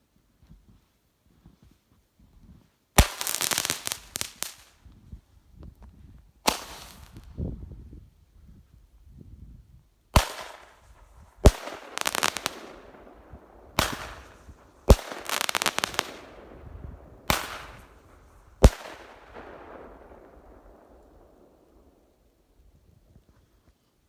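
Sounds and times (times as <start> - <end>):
firework crackling: 3.0 - 4.8, 6.5 - 7.4, 10.2 - 22.0.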